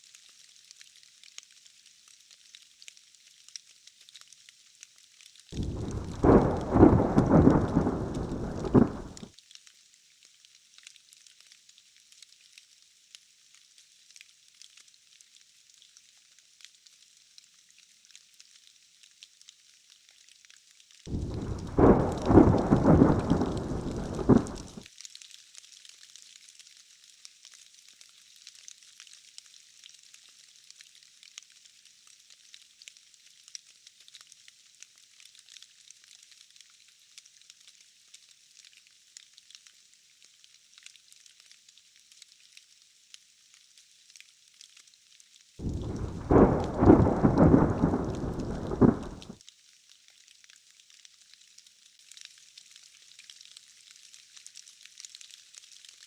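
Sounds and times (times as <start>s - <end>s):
rain drop ticks: 0.1s - 56.0s
steady rain hiss: 5.5s - 9.4s, 21.0s - 24.9s, 43.4s - 56.0s
thunder rumbling: 5.6s - 9.3s, 21.1s - 24.8s, 45.6s - 49.4s.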